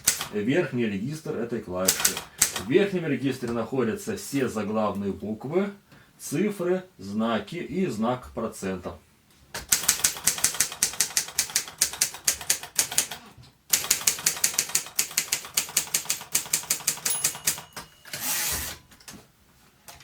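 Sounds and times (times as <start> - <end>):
manual typewriter typing: 0.0 - 0.4, 1.8 - 2.7, 9.6 - 19.1.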